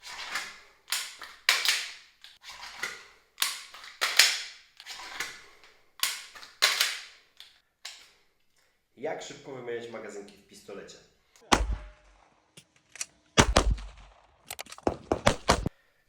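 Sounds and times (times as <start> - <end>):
pistol magazine metallic clacks: 0.9 - 2.4, 3.4 - 5.4, 6.0 - 8.2.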